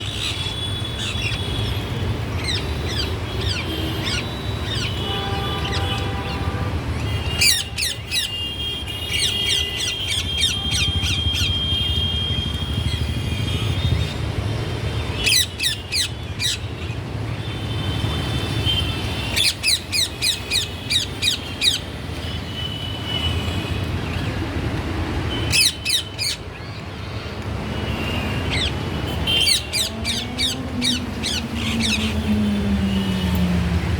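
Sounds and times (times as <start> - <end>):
parrot chirping and squawking: 29.4 - 32.1.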